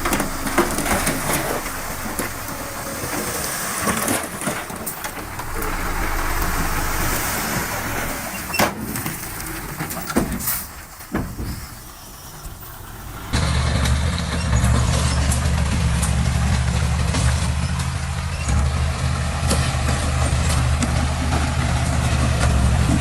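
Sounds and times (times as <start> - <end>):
diesel engine running: 0.0 - 23.0
hiss: 0.2 - 13.4.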